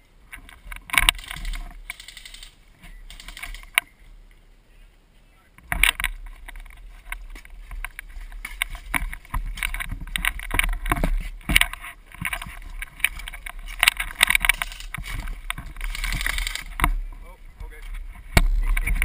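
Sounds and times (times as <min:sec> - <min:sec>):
camera handling clicks and knocks: 0:05.6 - 0:17.0.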